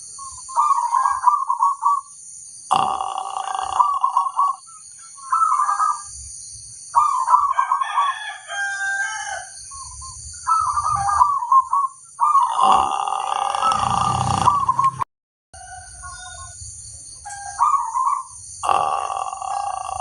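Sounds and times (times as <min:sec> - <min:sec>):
steady high-pitched hiss: 0:00.0 - 0:15.0, 0:15.6 - 0:20.0
doves cooing: 0:00.5 - 0:02.0, 0:02.8 - 0:04.6, 0:10.5 - 0:15.0, 0:17.2 - 0:20.0.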